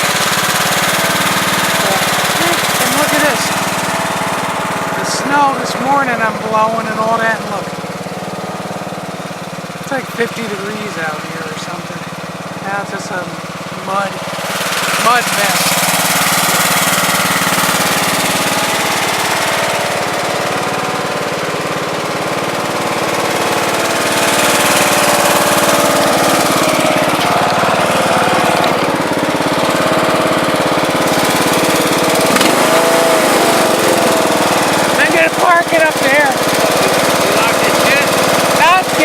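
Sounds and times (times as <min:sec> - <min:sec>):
riding lawn tractor engine: 0:00.0 - 0:39.0.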